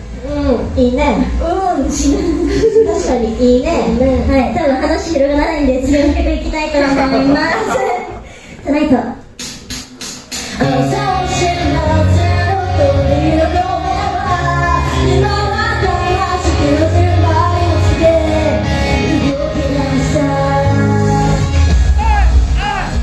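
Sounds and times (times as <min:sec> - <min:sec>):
bass-heavy pop beat: 0:09.4 - 0:23.0
women singing: 0:10.6 - 0:21.4.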